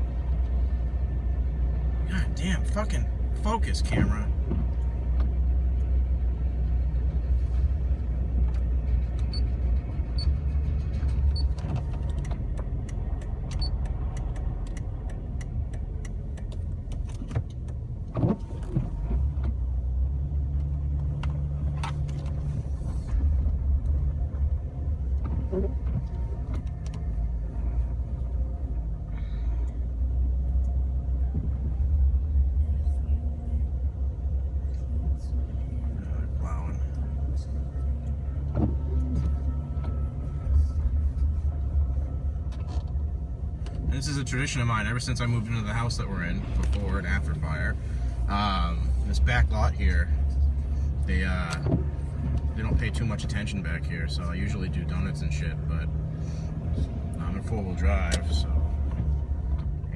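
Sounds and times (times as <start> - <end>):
engine and tyres rumbling: 0.0 - 59.9.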